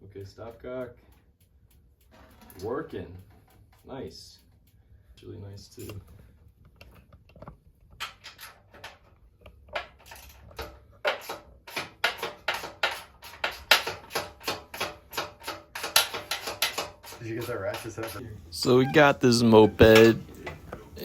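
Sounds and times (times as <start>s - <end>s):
ratchet wrench clicking: 9.8s - 18.2s.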